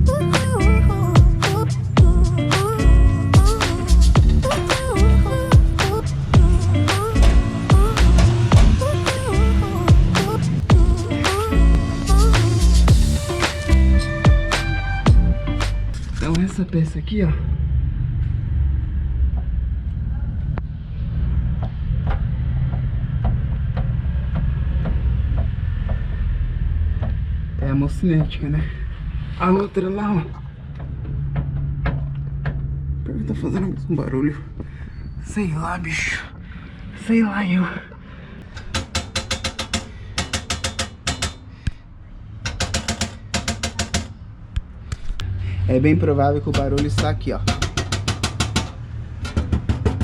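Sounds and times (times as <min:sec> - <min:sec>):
low rumble: 0:00.0 - 0:37.1
rapid metallic clicking: 0:38.5 - 0:41.5, 0:42.4 - 0:44.2, 0:46.5 - 0:50.0.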